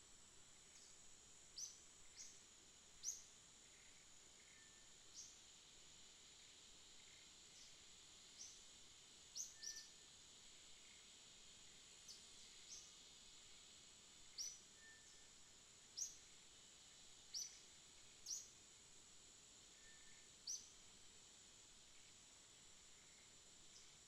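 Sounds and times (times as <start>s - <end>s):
high insect drone: 0.0s - 24.0s.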